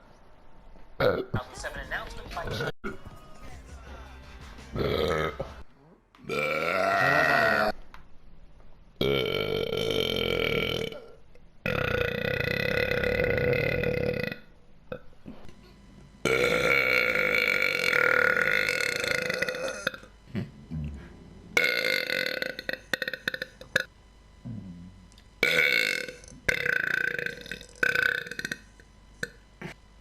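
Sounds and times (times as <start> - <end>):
person burping: 1.0 - 1.4, 4.8 - 5.5, 6.2 - 7.8, 9.0 - 29.8.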